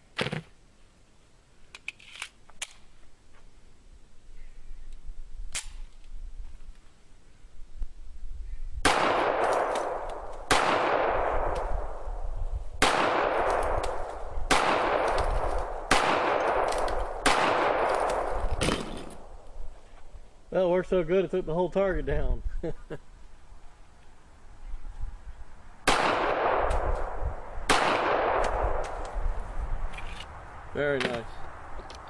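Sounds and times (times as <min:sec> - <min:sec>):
pistol shots with echo: 0:08.8 - 0:12.0, 0:12.8 - 0:19.3, 0:25.8 - 0:28.9.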